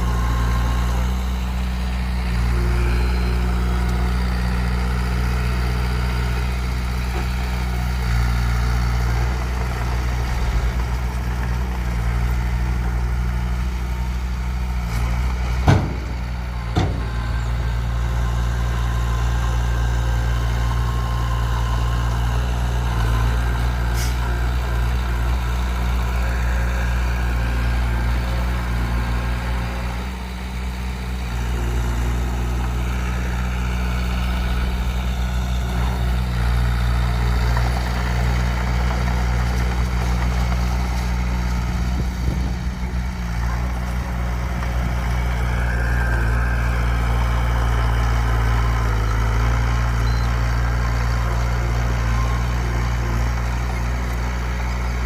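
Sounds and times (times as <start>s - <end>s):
construction machine engine running: 0.0s - 55.0s.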